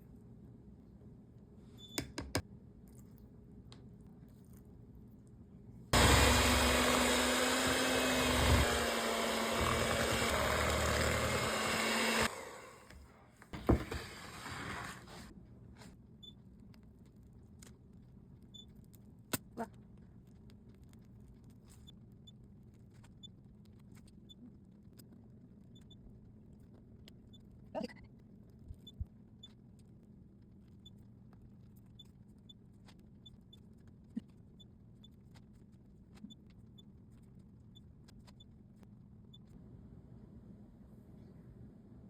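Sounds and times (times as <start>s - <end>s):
kitchen appliance motor running: 6.0s - 13.0s.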